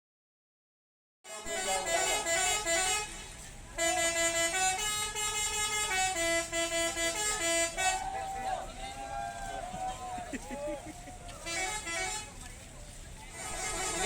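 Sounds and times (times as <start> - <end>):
multi-note bus horn tune: 1.3 - 8.6, 11.4 - 12.4, 13.3 - 14.0.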